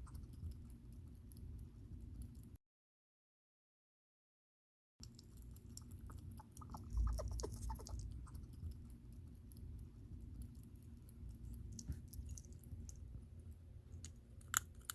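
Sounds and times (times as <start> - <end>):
hedgehog chirping: 5.7 - 9.2.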